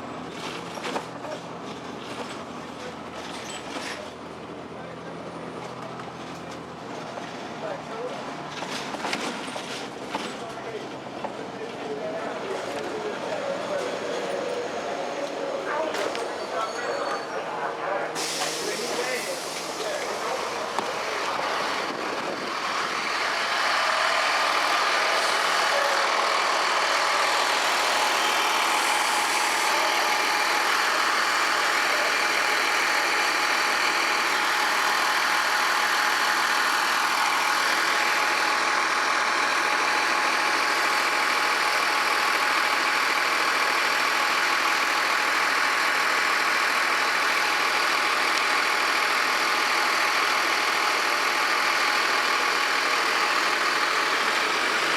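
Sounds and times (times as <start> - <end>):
bus diesel engine running: 0.0 - 54.9.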